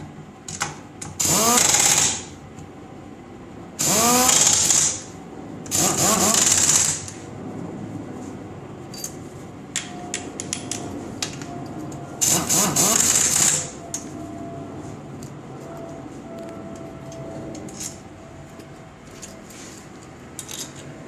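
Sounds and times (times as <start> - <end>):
metal tools clicking and clattering: 17.0 - 19.4, 20.0 - 21.0.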